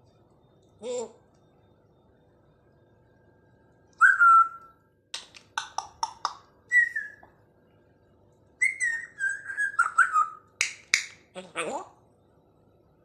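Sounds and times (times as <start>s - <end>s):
parrot whistling: 4.0s - 4.7s, 6.7s - 7.2s, 8.6s - 10.5s
parrot clicking notes: 5.2s - 6.4s.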